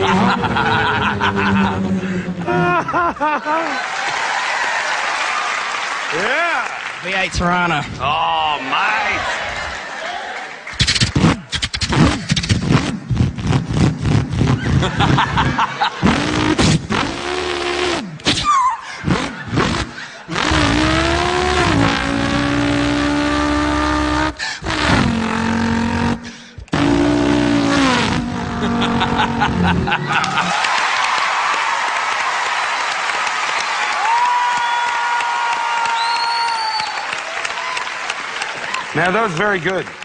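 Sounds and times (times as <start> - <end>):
man imitating car engine: 0.0 - 2.8, 16.0 - 30.5.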